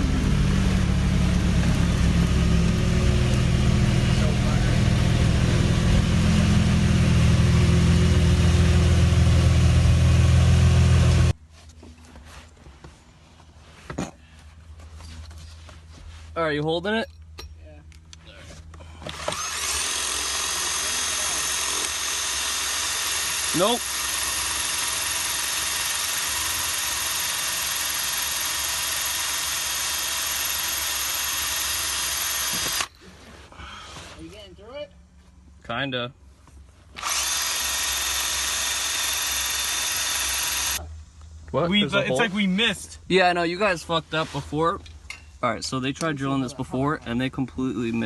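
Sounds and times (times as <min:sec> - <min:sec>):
car engine idling: 0:00.0 - 0:11.3
power drill whining: 0:19.0 - 0:33.0, 0:37.0 - 0:40.8.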